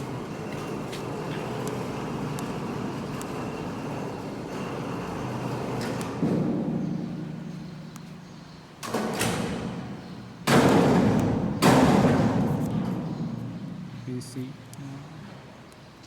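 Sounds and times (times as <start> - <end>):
sudden knocks or bangs: 10.4 - 13.7.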